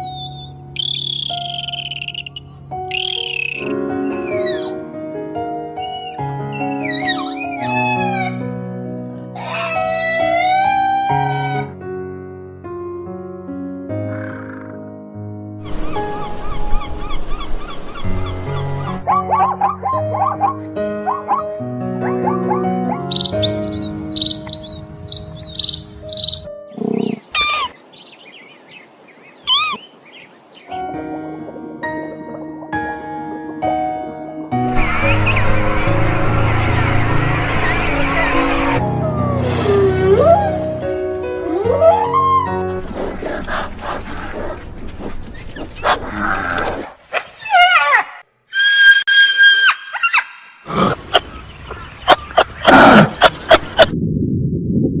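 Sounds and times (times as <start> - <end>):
bird chirping: 0.0 - 4.8, 5.8 - 8.4, 23.0 - 30.8
background music: 0.0 - 27.4, 30.7 - 45.1
steady high-pitched animal call: 0.8 - 4.8, 5.8 - 8.4, 29.5 - 29.8, 47.4 - 50.6
animal call falling in pitch: 37.7 - 40.8.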